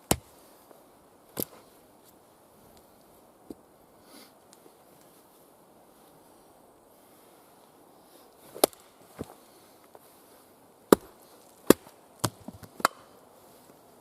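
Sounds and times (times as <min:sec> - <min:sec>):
axe chopping wood: 0:00.0 - 0:00.3, 0:08.5 - 0:08.8, 0:10.9 - 0:13.0.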